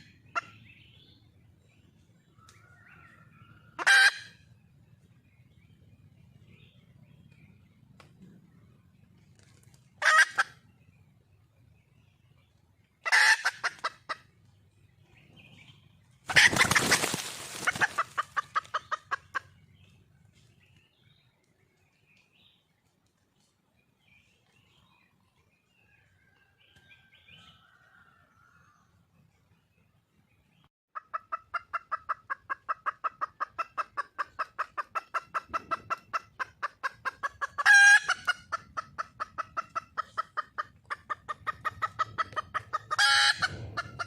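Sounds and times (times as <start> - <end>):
hen cackling: 3.8 - 4.4, 10.0 - 10.6, 13.0 - 14.3, 16.3 - 19.5, 31.0 - 44.0
faint small birds chirping: 13.9 - 30.7.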